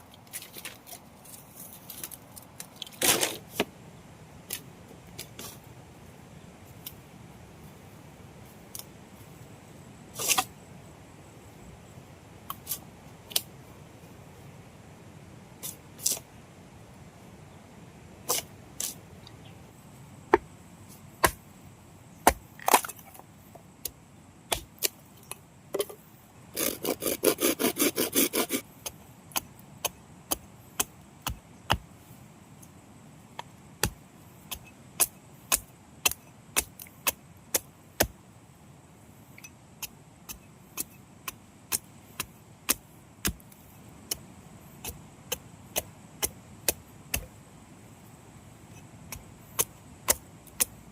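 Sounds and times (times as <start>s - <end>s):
blade chopping wood: 21.2s - 21.4s, 22.2s - 23.0s, 26.6s - 31.9s, 33.4s - 38.2s, 39.8s - 44.2s, 44.8s - 47.3s.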